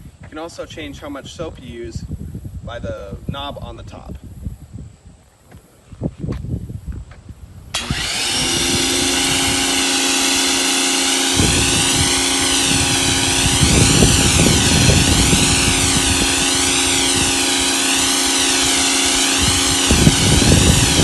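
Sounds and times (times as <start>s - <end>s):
pressure washer motor humming: 7.8s - 21.0s
spray hissing: 7.8s - 21.0s.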